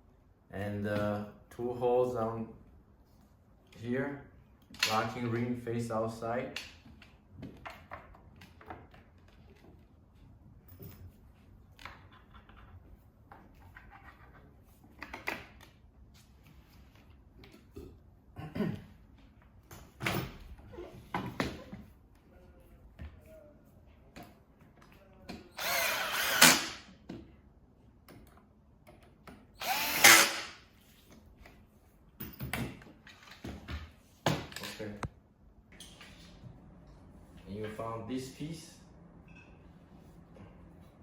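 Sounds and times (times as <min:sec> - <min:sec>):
power drill driving screws: 0:25.6 - 0:26.8, 0:29.6 - 0:30.6.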